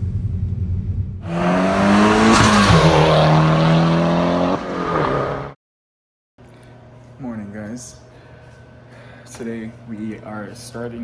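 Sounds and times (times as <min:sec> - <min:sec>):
car engine accelerating hard: 0:01.2 - 0:05.6.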